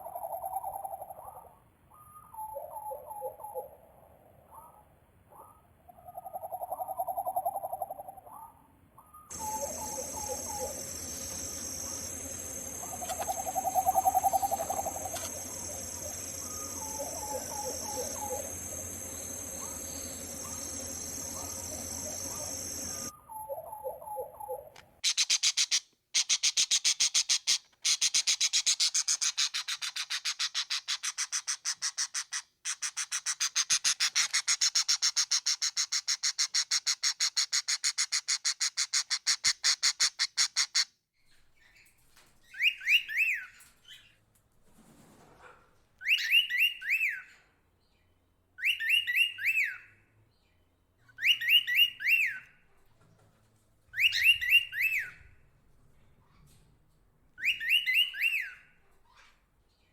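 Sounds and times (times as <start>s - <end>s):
bird whistled phrase: 9.3s - 12.2s, 12.8s - 18.8s
birds rattling chatter: 9.3s - 23.1s.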